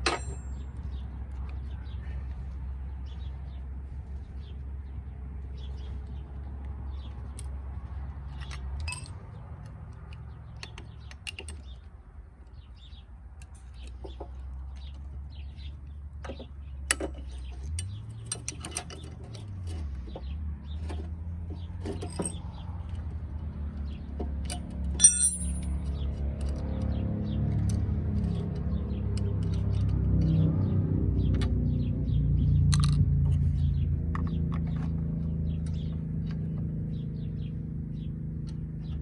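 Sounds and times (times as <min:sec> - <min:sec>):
metal tools clinking: 0:00.0 - 0:00.8, 0:08.3 - 0:09.3, 0:16.9 - 0:19.9, 0:20.8 - 0:23.0, 0:24.4 - 0:26.6.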